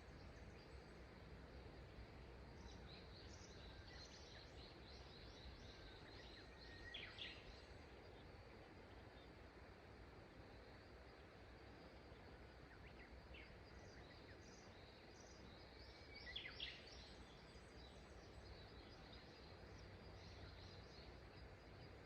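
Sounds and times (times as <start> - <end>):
faint birds chirping: 0.0 - 22.0
river flowing: 7.3 - 13.6.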